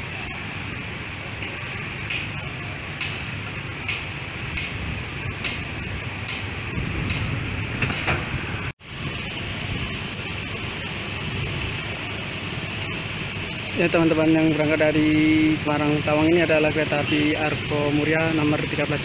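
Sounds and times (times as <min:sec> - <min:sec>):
diesel train rumble: 0:00.0 - 0:19.0
wheels clacking over rail joints: 0:01.3 - 0:08.7.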